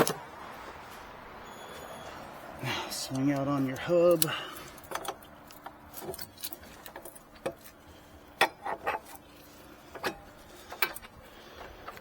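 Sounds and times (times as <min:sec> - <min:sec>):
metal parts clinking and knocking: 0:04.2 - 0:07.8.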